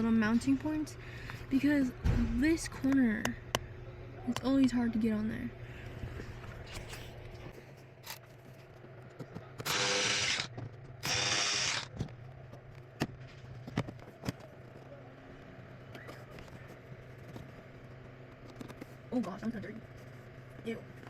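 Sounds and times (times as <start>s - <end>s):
cordless power tool running bolt: 9.6s - 12.0s.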